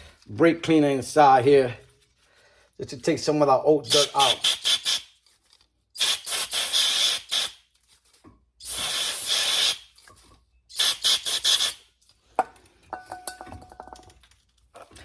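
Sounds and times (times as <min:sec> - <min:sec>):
aerosol spray hissing: 0:03.9 - 0:05.1, 0:06.0 - 0:07.6, 0:08.6 - 0:09.9, 0:10.7 - 0:11.8.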